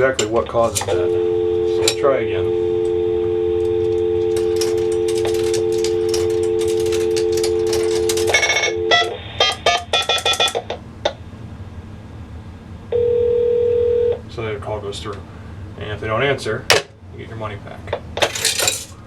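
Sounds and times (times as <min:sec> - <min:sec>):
payphone dial tone: 0:00.8 - 0:10.8, 0:12.9 - 0:14.2
touch-tone keypad beeps: 0:01.2 - 0:10.6.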